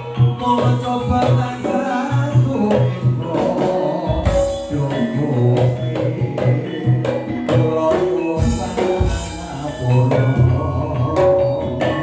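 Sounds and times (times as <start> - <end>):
drum strokes: 0.0 - 12.0
melodic instruments: 0.0 - 12.0.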